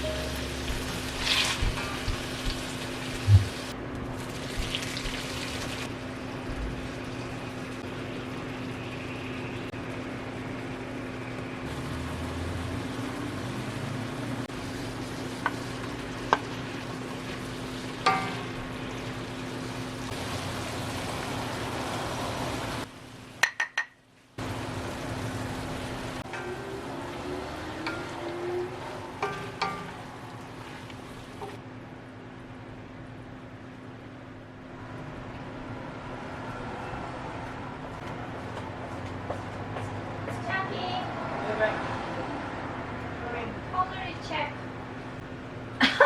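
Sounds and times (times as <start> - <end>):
food sizzling in a pan: 0.0 - 5.9, 6.7 - 23.3, 24.4 - 31.6
utensil clinking against pan: 18.1 - 18.7, 29.2 - 30.0.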